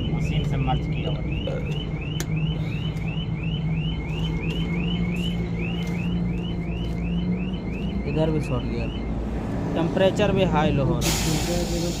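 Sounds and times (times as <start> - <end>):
electronic alarm chirping: 0.0 - 9.2.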